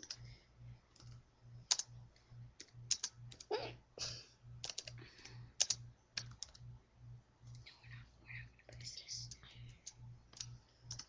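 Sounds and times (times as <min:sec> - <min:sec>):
computer keyboard typing: 0:00.0 - 0:00.2, 0:00.9 - 0:01.9, 0:02.6 - 0:03.5, 0:04.6 - 0:06.7, 0:08.7 - 0:11.0
faint pulsing low hum: 0:00.0 - 0:11.0.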